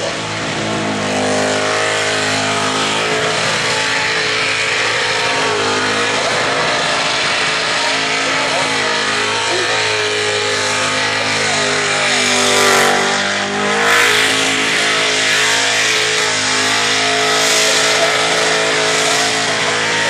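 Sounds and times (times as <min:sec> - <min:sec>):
car engine at high revs: 0:00.0 - 0:20.0
spinning tyres hissing: 0:10.2 - 0:20.0.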